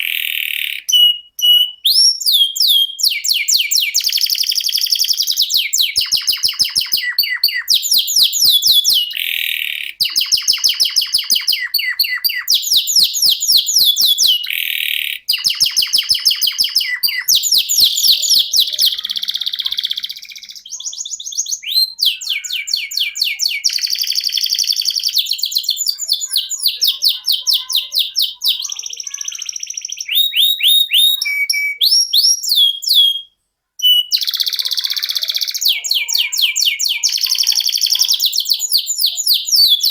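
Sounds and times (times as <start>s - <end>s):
canary singing rolling trills: 0.0s - 39.9s.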